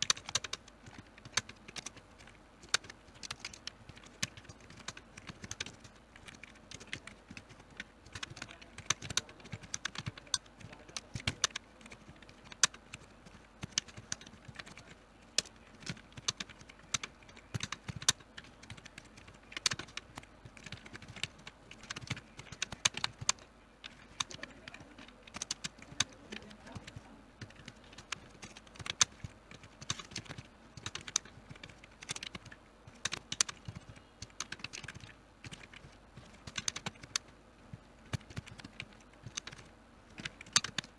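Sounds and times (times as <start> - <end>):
keyboard typing: 0.0 - 40.9.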